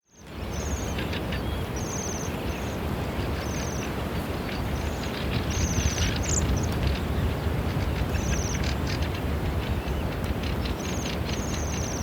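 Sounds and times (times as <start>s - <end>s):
birds giving trilled calls: 8.1s - 12.0s.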